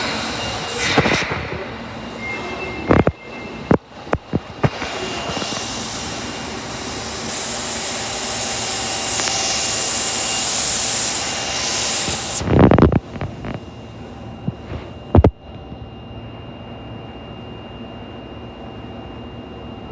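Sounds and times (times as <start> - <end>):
loud high hiss: 0.0 - 2.7, 4.8 - 12.6
thin high tone: 0.0 - 11.6.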